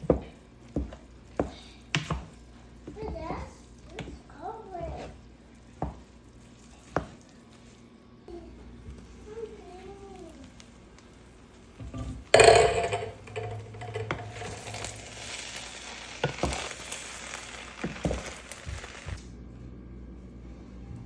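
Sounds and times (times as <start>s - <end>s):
cookware clattering and clinking: 11.8s - 15.4s.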